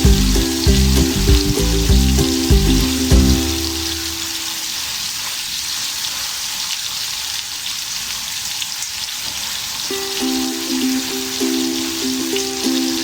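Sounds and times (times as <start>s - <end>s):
background music: 0.0s - 4.4s
steak sizzling in a frying pan: 3.0s - 13.0s.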